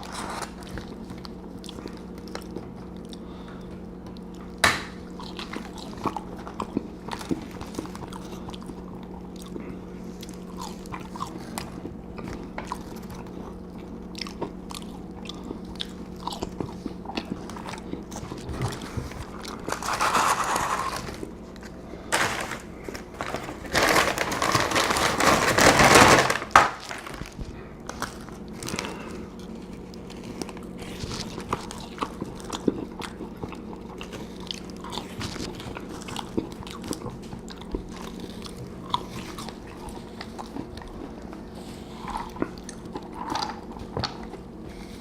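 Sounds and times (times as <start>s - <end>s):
chewing: 0.0s - 21.8s, 27.3s - 45.0s
loud crunch or rustle: 18.2s - 31.9s.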